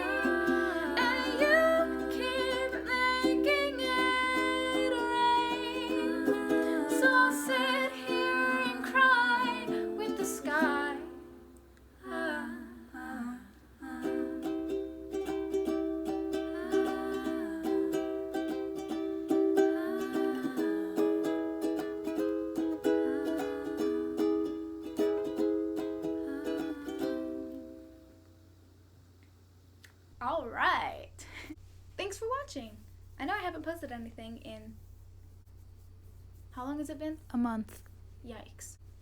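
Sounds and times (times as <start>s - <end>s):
ukulele strummed and picked: 0.0s - 11.7s, 13.8s - 28.2s.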